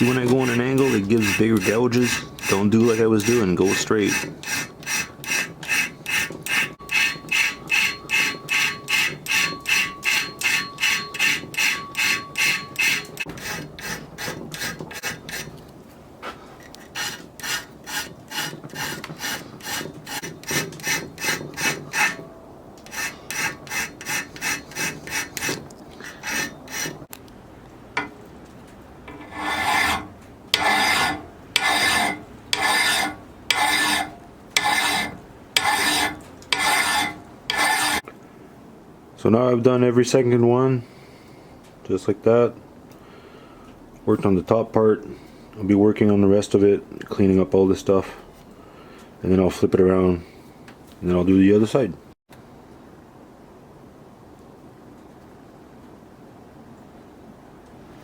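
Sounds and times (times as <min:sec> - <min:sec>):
file rasping on saw teeth: 0:00.0 - 0:15.5, 0:16.7 - 0:22.2, 0:22.9 - 0:27.0, 0:29.1 - 0:38.0.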